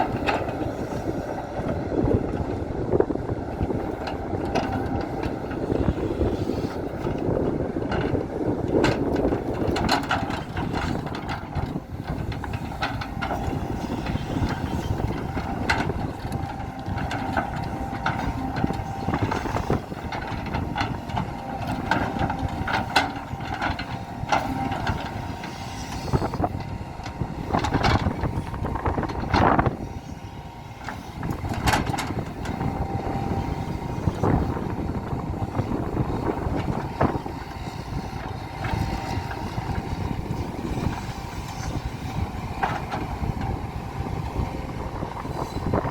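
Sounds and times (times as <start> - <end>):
clanks and knocks of excavator: 0.0 - 45.9
excavator diesel engine whine: 0.0 - 45.9.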